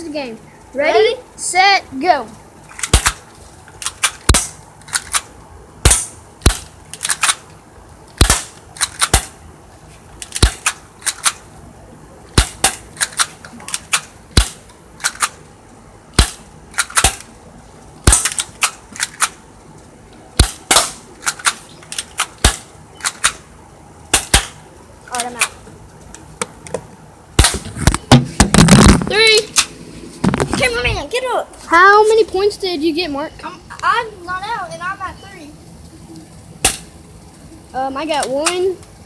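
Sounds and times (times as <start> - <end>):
airsoft guns firing: 2.8 - 3.3, 3.9 - 7.4, 8.2 - 9.4, 10.3 - 11.4, 12.3 - 15.4, 16.1 - 17.3, 18.0 - 19.4, 20.4 - 23.4, 24.1 - 24.6, 27.4 - 29.0, 36.6 - 36.9.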